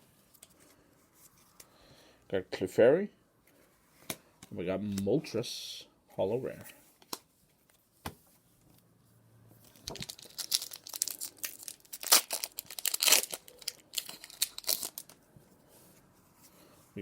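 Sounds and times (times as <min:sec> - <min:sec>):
foil wrapper crinkling and tearing: 0:09.8 - 0:15.2.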